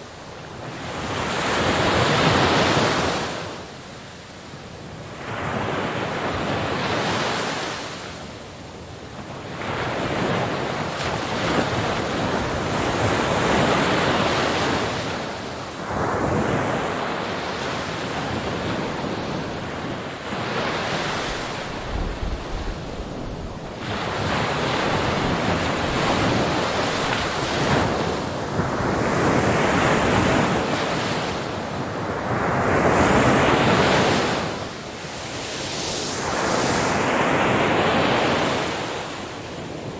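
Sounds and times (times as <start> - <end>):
ocean waves breaking: 9.5 - 39.9.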